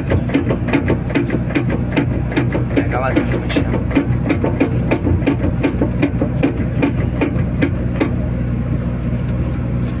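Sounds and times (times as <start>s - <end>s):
rapid knocking from drive train: 0.0s - 8.1s
loader engine humming: 0.0s - 10.0s.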